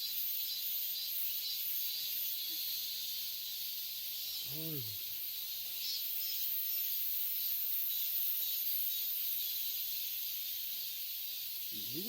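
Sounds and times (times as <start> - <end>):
insects singing: 0.0 - 12.0.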